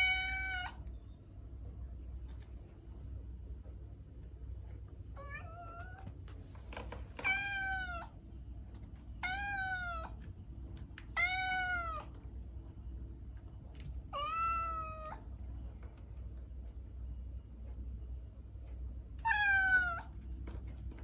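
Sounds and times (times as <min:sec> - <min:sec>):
cat meowing: 0:00.0 - 0:00.8, 0:05.2 - 0:06.1, 0:07.2 - 0:08.2, 0:09.2 - 0:10.2, 0:11.1 - 0:12.1, 0:14.1 - 0:15.2, 0:19.2 - 0:20.1
low steady hum: 0:00.0 - 0:21.0.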